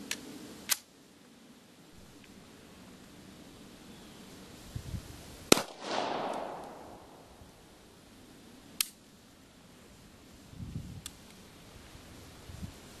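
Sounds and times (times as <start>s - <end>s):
pistol shot with echo: 5.5s - 7.4s.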